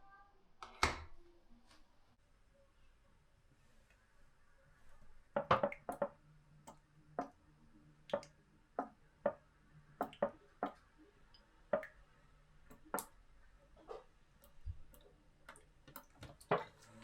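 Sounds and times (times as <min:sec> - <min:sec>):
household objects clicking and knocking: 0:05.4 - 0:06.2.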